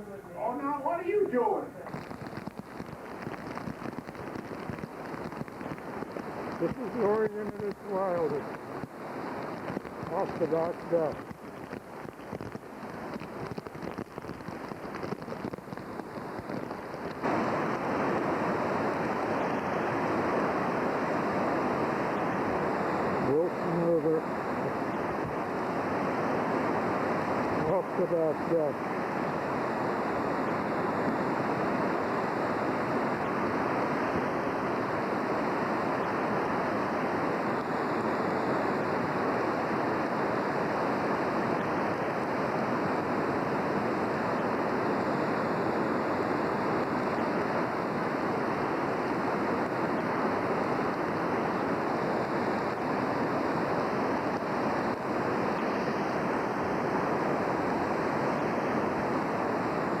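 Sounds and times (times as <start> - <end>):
flooded river rushing: 16.8 - 32.0.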